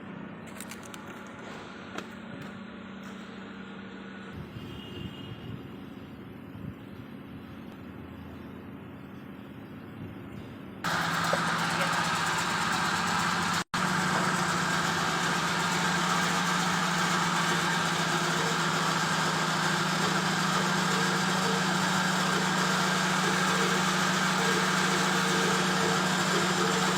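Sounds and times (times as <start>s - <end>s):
crusher machinery running: 10.8s - 26.9s.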